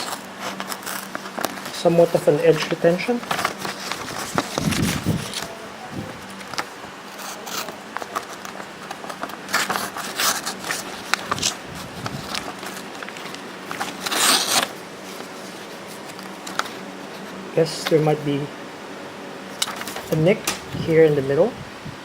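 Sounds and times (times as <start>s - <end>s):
knife slicing paper: 3.3s - 5.6s, 6.2s - 16.6s.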